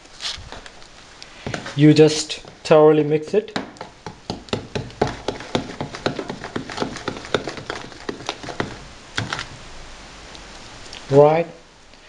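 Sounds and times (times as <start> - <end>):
spoon mixing batter in bowl: 1.5 - 9.5.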